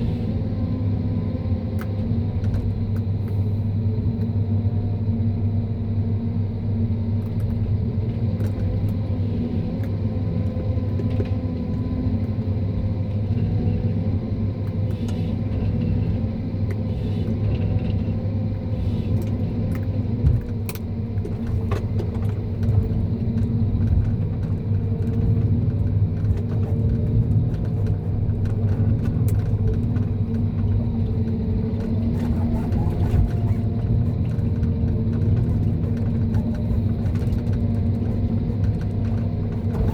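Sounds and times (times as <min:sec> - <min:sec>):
diesel engine running under load: 0:00.0 - 0:39.9.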